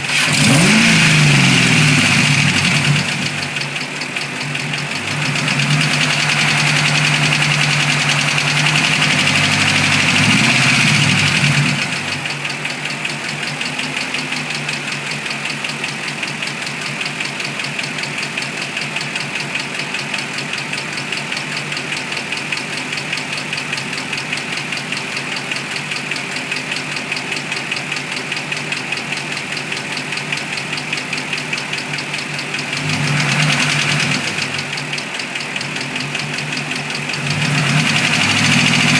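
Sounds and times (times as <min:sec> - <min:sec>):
car engine running: 0:00.0 - 0:38.9
fast even engine tapping: 0:00.0 - 0:38.9.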